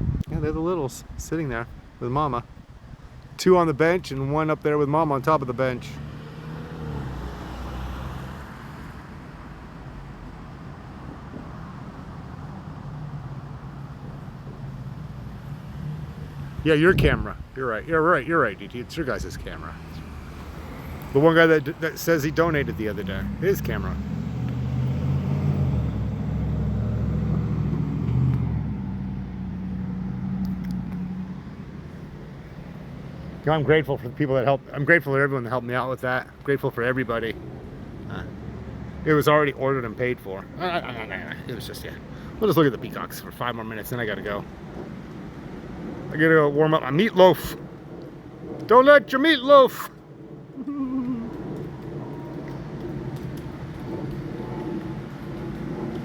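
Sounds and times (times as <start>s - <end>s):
road noise: 0.0s - 56.0s
car engine rumble: 18.6s - 34.7s.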